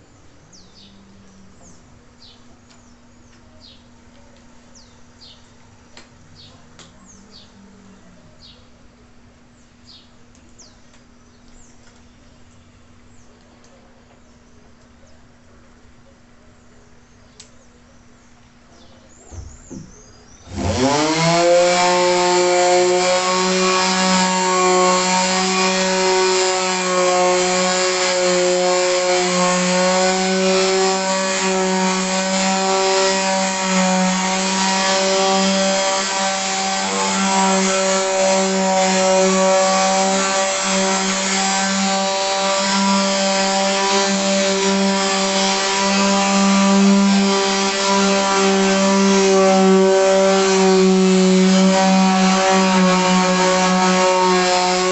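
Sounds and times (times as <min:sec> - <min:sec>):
power sander motor whine: 0:19.3 - 0:54.9
sandpaper hissing on wood: 0:20.5 - 0:54.9.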